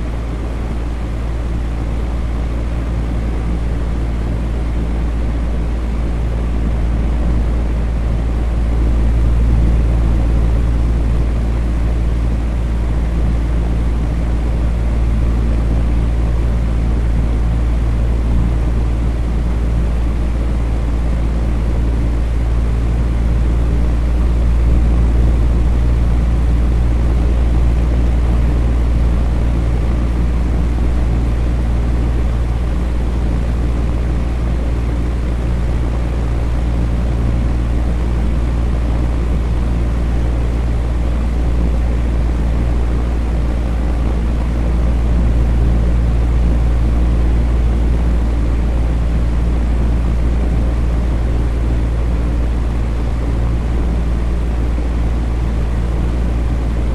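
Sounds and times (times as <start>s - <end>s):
electric fan humming: 0.0s - 56.9s.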